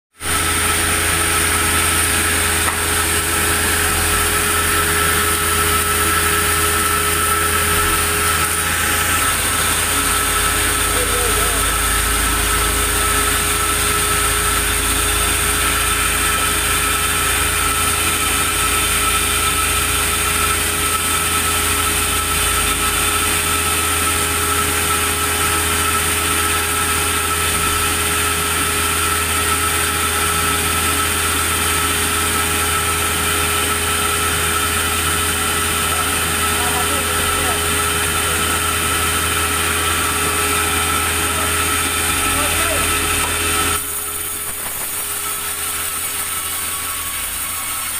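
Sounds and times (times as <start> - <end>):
high mechanical whine: 0.2 - 47.9
sawmill machinery humming: 0.2 - 47.9.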